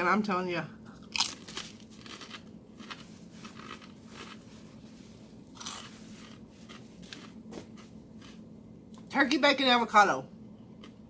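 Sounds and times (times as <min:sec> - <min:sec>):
person chewing food: 0:01.0 - 0:08.5.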